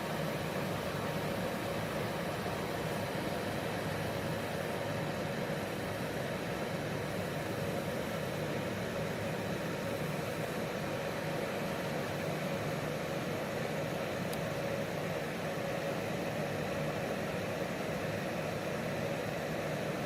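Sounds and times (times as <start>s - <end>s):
fan air rush with motor hum: 0.0s - 20.0s.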